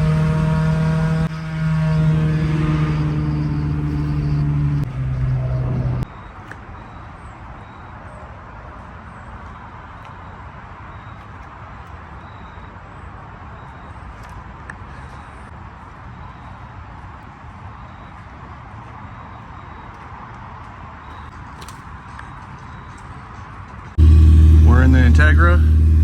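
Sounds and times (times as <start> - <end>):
car engine at high revs: 0.0 - 6.1, 24.0 - 26.0
quiet low rumble: 24.0 - 26.0.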